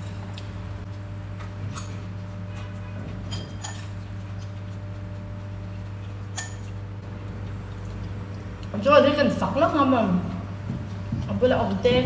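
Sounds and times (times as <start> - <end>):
low electrical hum: 0.0 - 12.0
cutlery clinking against plates: 1.7 - 4.0, 6.3 - 6.8.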